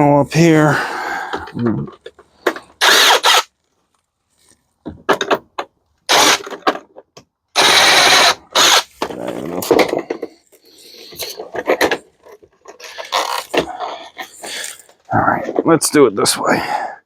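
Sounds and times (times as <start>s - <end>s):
power drill whirring: 2.5s - 3.6s, 6.1s - 6.6s, 7.6s - 9.0s
knocks and rattles: 4.8s - 7.3s, 9.0s - 10.5s, 11.1s - 15.9s.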